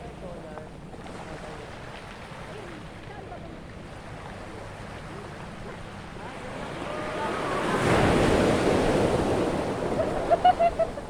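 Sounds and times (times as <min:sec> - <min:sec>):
wave wash running: 0:01.2 - 0:11.0
wave breaking: 0:05.9 - 0:11.0.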